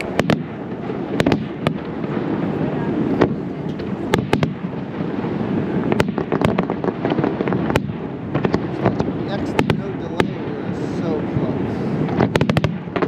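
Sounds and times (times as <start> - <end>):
firework cracks and pops: 0.0 - 13.0
low rumble of firework bursts: 0.0 - 13.0.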